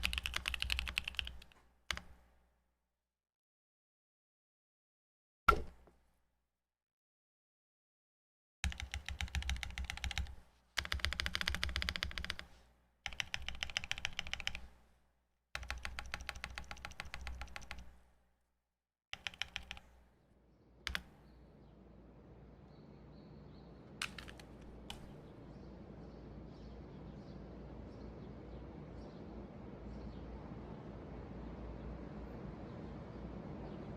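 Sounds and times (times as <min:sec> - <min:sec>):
mechanical keyboard keystrokes: 0:00.0 - 0:02.2, 0:08.6 - 0:12.4, 0:13.1 - 0:14.7, 0:15.6 - 0:18.0, 0:19.2 - 0:19.9, 0:20.9 - 0:21.2, 0:24.0 - 0:25.2.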